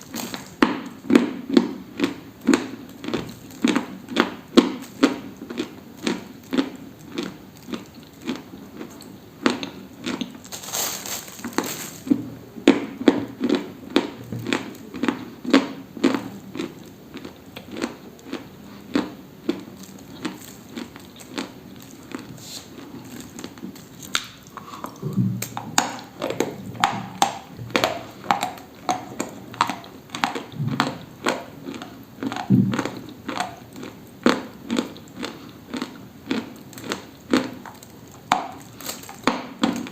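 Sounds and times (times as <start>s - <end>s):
dry brittle crunching: 4.8s - 12.2s, 19.6s - 24.6s, 34.7s - 39.9s.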